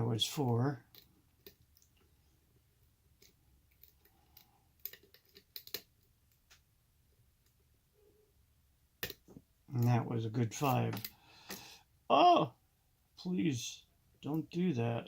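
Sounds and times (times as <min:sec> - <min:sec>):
lock pick clicking and scraping: 0:03.2 - 0:06.0.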